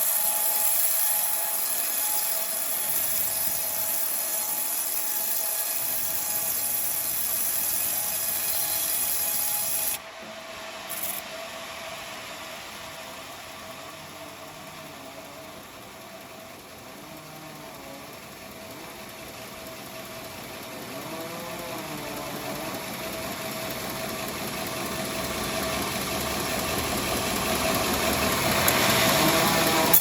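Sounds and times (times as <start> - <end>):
bandsaw cutting timber: 0.0 - 10.0, 27.3 - 30.0
saw machine running: 0.0 - 30.0.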